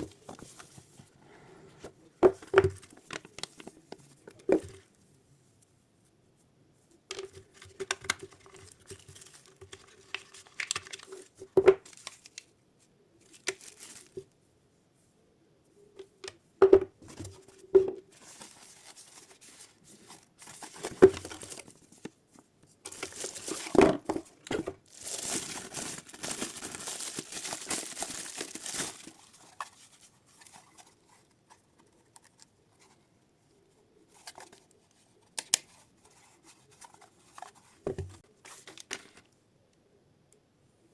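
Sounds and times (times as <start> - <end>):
packaging tearing and crinkling: 13.3 - 14.2, 22.9 - 29.5.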